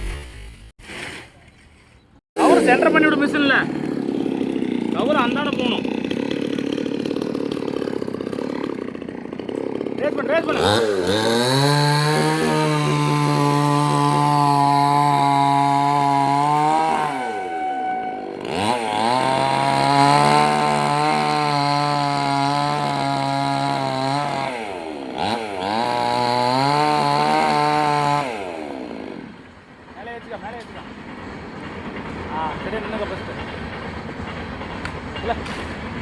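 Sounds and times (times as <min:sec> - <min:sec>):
chainsaw cutting tree trunk: 0:02.4 - 0:29.5.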